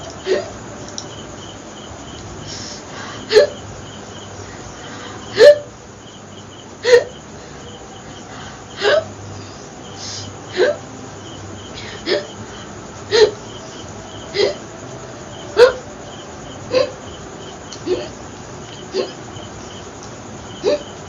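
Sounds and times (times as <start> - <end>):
woman hiccuping: 3.3 - 3.6, 5.3 - 5.7, 10.5 - 10.8, 14.4 - 14.6, 15.6 - 15.8, 17.8 - 18.1, 18.9 - 19.2, 20.6 - 20.9.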